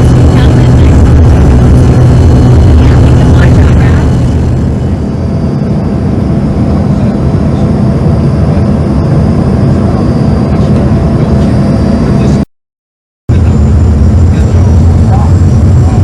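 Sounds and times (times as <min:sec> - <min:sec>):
jet engine cabin rumble: 0:00.0 - 0:12.4, 0:13.3 - 0:16.0.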